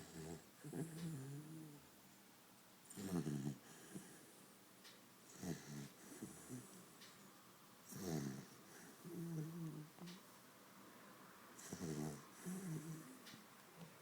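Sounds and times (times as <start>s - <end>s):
dog snoring: 0.0s - 1.8s, 2.9s - 4.3s, 5.3s - 6.9s, 7.8s - 10.2s, 11.6s - 13.3s
faint dog breaths: 2.9s - 4.6s, 5.3s - 10.4s, 11.0s - 13.5s.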